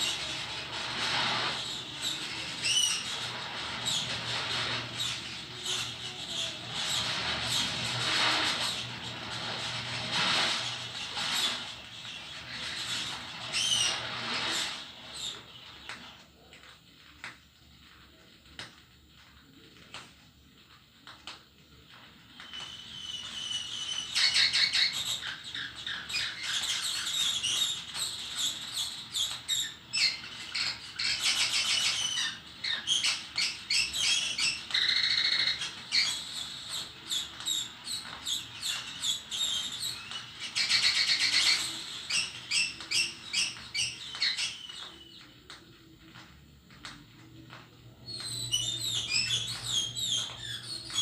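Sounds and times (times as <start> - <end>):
birds chirping and trilling: 22.4 - 45.5, 47.4 - 51.0.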